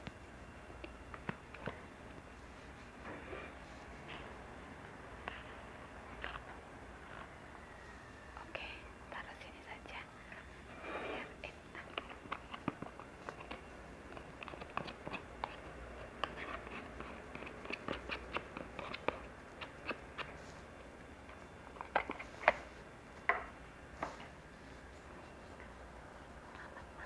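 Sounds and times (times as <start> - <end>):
clicks and taps of food handling: 11.9 - 15.6.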